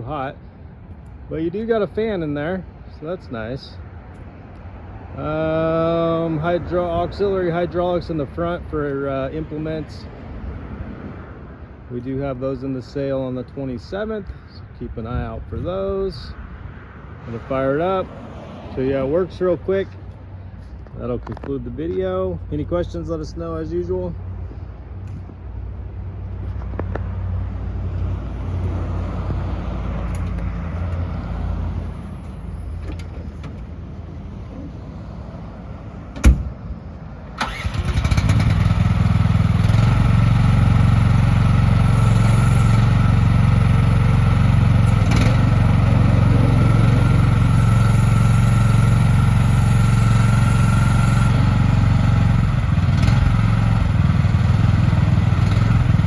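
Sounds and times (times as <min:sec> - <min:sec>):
excavator engine starting and idling: 0:37.2 - 0:56.0.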